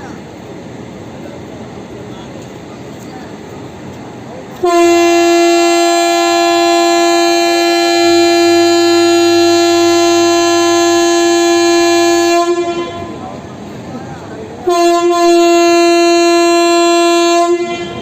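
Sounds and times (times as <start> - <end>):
locomotive horn blast: 4.6 - 13.5, 14.6 - 18.0.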